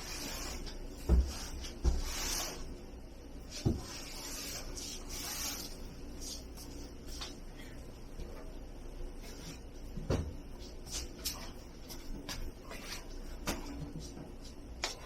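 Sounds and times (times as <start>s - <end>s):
rubbing and scraping: 0.0s - 2.7s, 3.6s - 6.5s.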